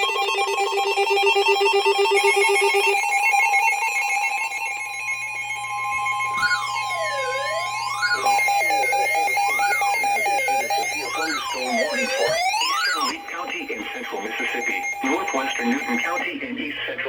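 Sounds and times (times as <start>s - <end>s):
steady electronic tones: 0.0s - 17.0s
sweeping siren-like tone: 5.2s - 16.4s
warbling electronic ring: 5.8s - 16.4s.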